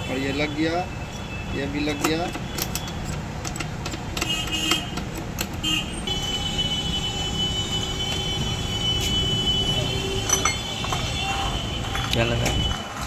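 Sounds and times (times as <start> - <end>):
metal clicks: 1.9 - 5.6.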